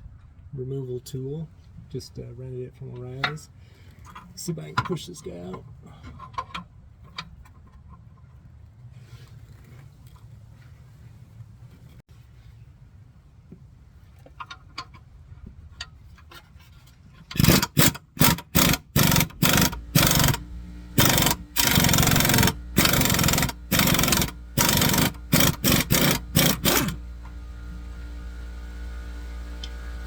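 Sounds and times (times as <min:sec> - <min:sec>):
power tool bursts: 0:17.4 - 0:27.1.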